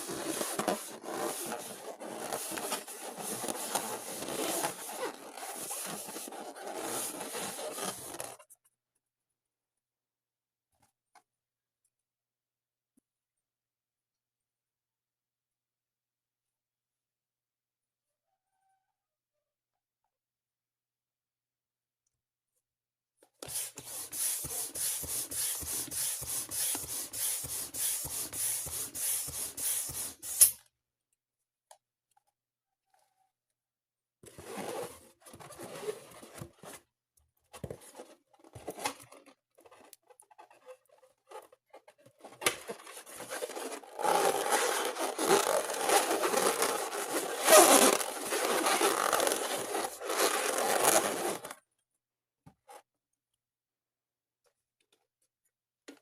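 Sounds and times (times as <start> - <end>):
rubber balloons rubbing: 0.0 - 8.4, 23.5 - 30.5, 43.1 - 51.5.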